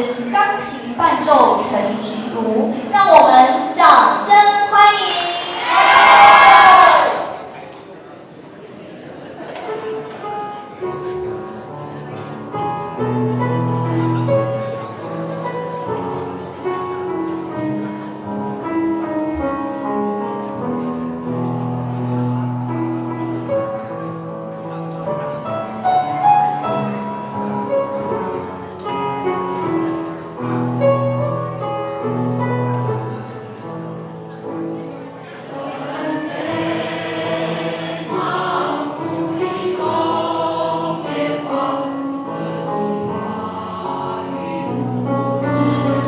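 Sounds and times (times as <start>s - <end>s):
piano playing: 9.7s - 46.0s.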